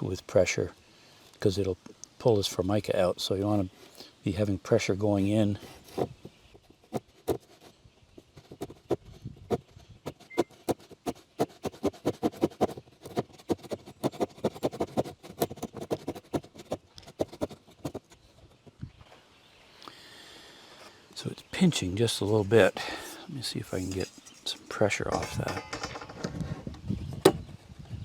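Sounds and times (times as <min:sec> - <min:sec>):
handsaw cutting laminate: 0:09.5 - 0:18.0.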